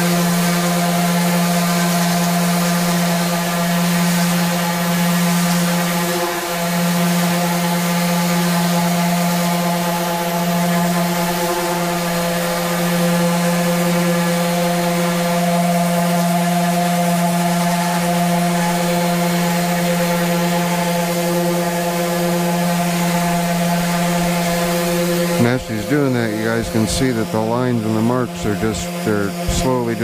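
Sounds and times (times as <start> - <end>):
electric sander humming: 0.0 - 30.0.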